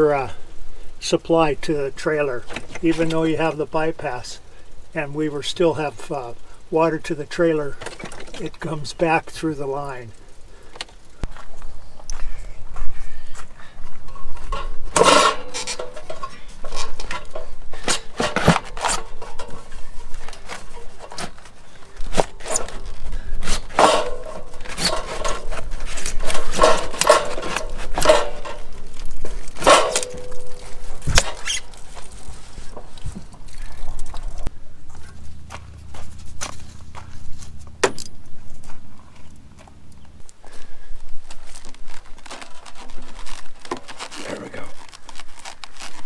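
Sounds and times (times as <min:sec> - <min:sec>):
metallic clanks and clinks: 0:14.0 - 0:35.9.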